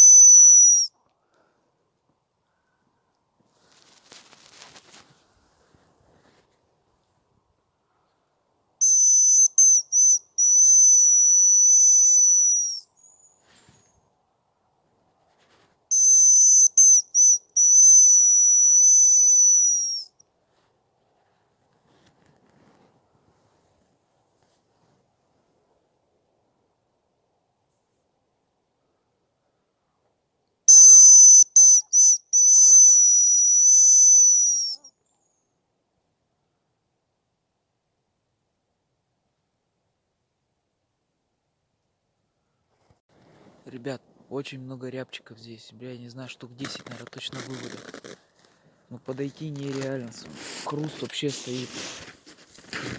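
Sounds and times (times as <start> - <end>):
decoy whistle high notes: 0.0 - 0.9, 8.8 - 12.8, 15.9 - 20.1, 30.7 - 34.9
fainter higher whistle: 0.0 - 0.9, 8.8 - 13.2, 15.9 - 20.1, 30.7 - 34.9
faint rustling: 3.4 - 7.2, 13.0 - 14.1, 14.9 - 15.9, 20.4 - 25.7, 42.7 - 44.4, 46.5 - 52.9.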